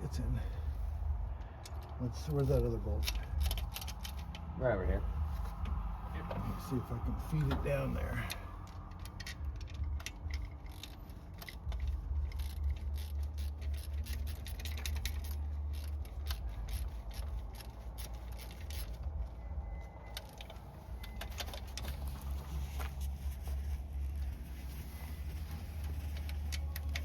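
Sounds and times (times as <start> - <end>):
steady low rumble: 0.0 - 27.0
metal tool clicks and scrapes: 3.0 - 4.5, 8.2 - 22.1.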